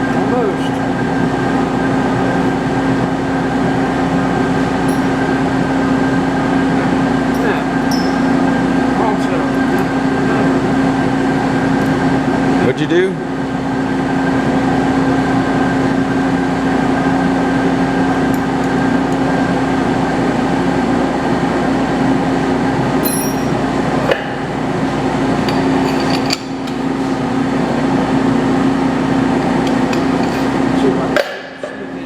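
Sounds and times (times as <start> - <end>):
metal lathe humming: 0.0 - 32.0
sharp metallic clinks: 23.0 - 23.5.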